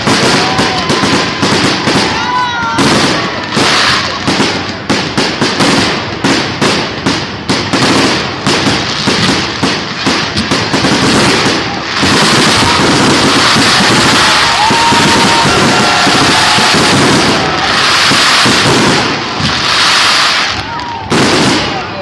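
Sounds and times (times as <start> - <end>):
fireworks bangs: 0.0 - 22.0.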